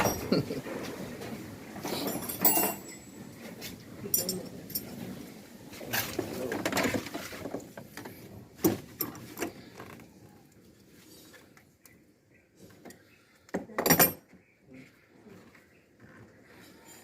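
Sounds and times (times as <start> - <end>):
tools and metal parts clinking: 0.0 - 0.4, 1.8 - 5.3, 13.8 - 14.3.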